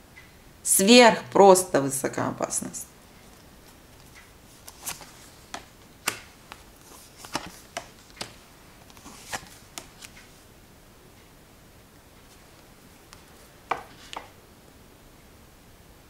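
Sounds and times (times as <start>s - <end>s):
cards clicking and tapping on table: 4.7s - 10.2s, 13.7s - 14.3s.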